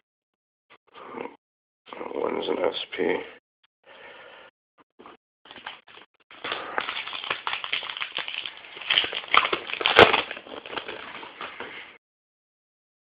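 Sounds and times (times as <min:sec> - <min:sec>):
cards and wrappers rustling: 0:05.5 - 0:12.0.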